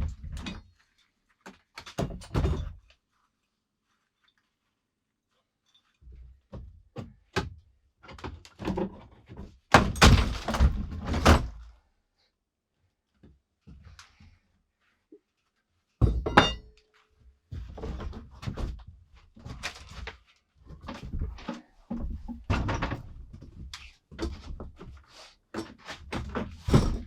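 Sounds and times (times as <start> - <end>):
objects knocking and thudding: 6.5 - 11.6, 16.0 - 16.7, 20.7 - 25.0, 25.6 - 27.0.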